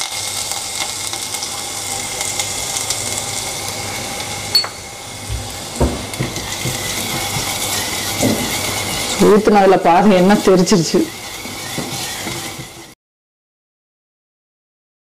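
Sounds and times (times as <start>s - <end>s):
oil sizzling in a pan: 0.0s - 13.0s
sharp clink: 4.5s - 4.8s.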